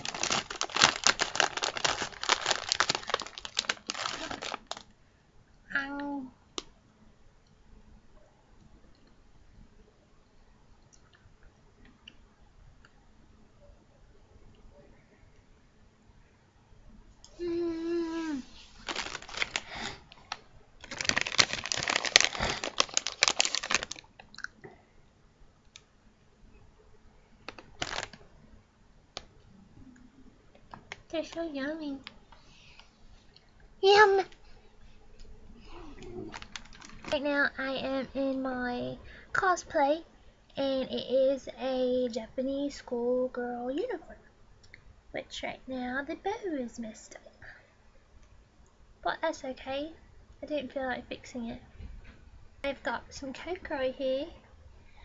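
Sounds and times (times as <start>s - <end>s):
packaging crinkling: 0.0s - 4.9s, 18.7s - 24.1s, 27.4s - 28.2s, 36.3s - 37.2s.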